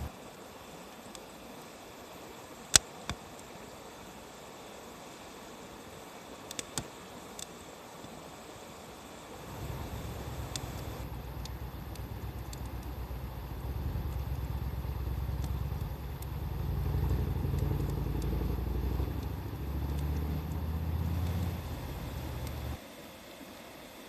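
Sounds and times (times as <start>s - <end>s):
campfire crackling and popping: 6.4s - 8.2s, 9.3s - 22.8s
vehicle engine droning: 9.4s - 22.8s.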